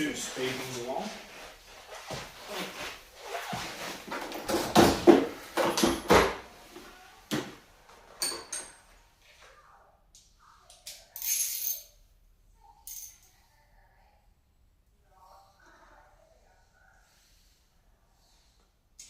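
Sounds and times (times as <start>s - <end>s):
metal tools clattering: 8.2s - 8.9s, 10.9s - 12.0s, 12.8s - 13.3s
metal clinks: 11.2s - 12.0s, 12.8s - 13.3s.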